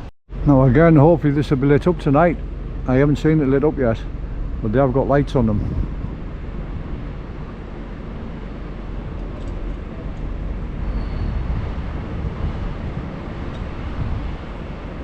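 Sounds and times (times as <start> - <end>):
fluttering low rumble: 4.1 - 14.4.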